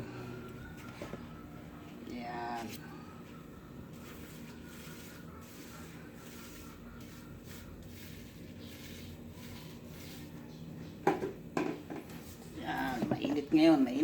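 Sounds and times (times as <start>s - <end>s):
low steady hum: 0.0s - 14.0s
paint strokes on a wall: 2.6s - 10.9s.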